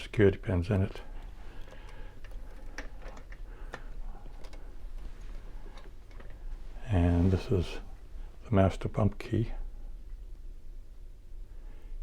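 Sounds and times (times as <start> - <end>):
padlock and keys clicking: 1.6 - 4.7.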